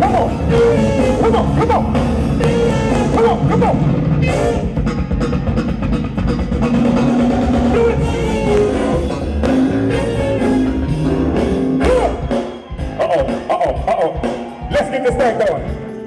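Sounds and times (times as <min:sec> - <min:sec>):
electric guitar lines: 0:00.0 - 0:12.4
bass guitar: 0:00.0 - 0:14.2
drum kit: 0:00.0 - 0:16.0.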